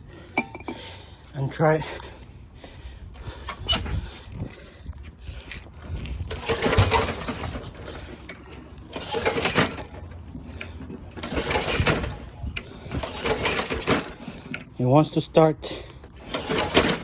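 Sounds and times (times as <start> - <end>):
lawn mower pull-start turning over: 6.3 - 14.8, 16.1 - 17.0.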